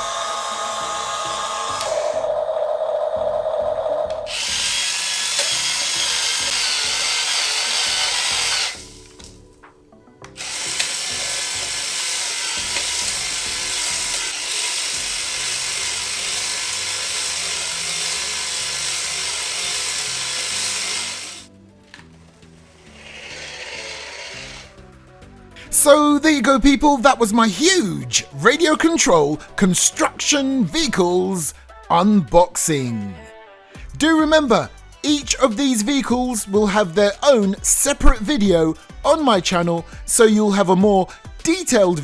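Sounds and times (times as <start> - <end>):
toy electric motors whirring: 0.0 - 2.3, 4.3 - 9.4, 10.3 - 24.9.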